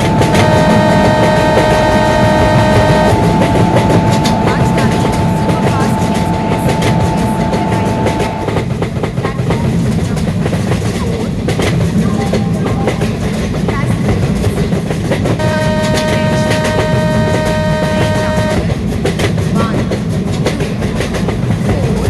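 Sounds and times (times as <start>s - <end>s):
steady pitched tone: 0.0s - 8.7s, 15.4s - 18.6s
train rumbling on rails: 0.0s - 22.0s.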